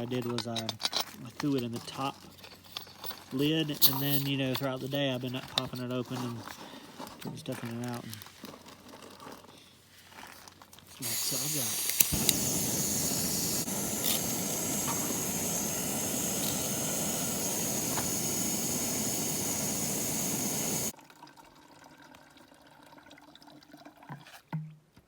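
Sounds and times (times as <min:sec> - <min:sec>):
rushing water hiss: 0:11.0 - 0:20.9.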